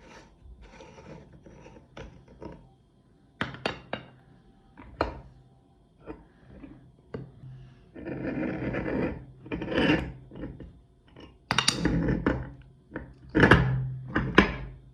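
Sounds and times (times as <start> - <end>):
meat grinder scraping and rasping: 7.9 - 10.7.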